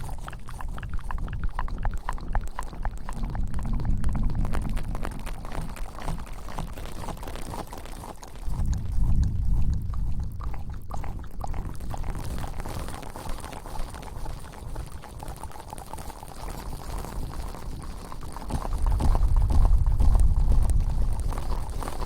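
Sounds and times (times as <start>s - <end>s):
wet rubbing and crackling: 0.0s - 22.0s
deep rumble: 3.2s - 6.1s, 8.5s - 12.5s, 18.5s - 22.0s.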